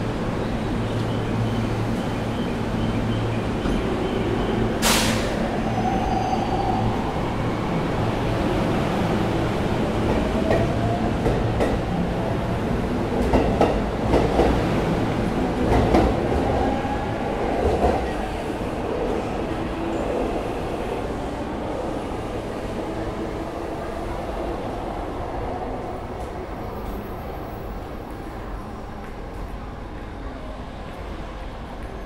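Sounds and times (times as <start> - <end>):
train rumbling on track: 0.0 - 32.0
air hiss burst: 4.8 - 5.4.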